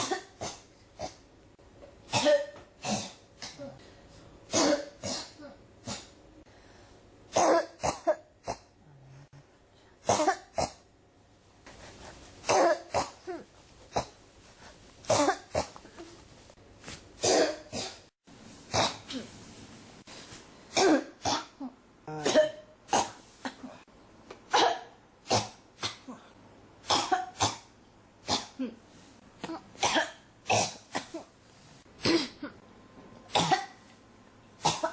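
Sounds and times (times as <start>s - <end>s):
person coughing: 0.0s - 1.2s, 2.1s - 3.8s, 4.5s - 6.1s, 7.3s - 8.7s, 10.0s - 10.8s, 12.4s - 14.2s, 15.0s - 16.2s, 17.2s - 18.1s, 20.7s - 23.9s, 24.5s - 27.7s, 29.4s - 31.3s, 32.0s - 32.6s, 33.3s - 33.9s, 34.6s - 34.9s.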